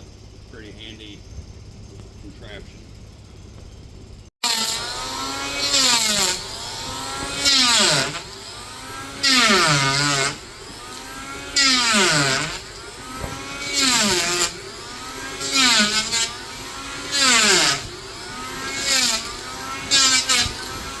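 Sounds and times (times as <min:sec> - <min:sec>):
electric hand planer cutting wood: 0:04.4 - 0:21.0.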